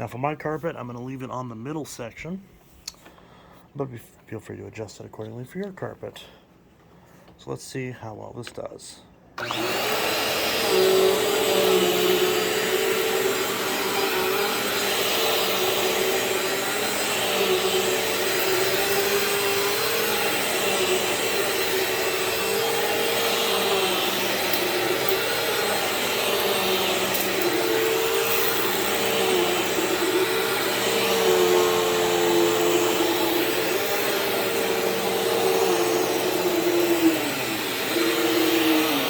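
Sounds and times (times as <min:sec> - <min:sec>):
vacuum cleaner running on carpet: 0:09.4 - 0:39.0.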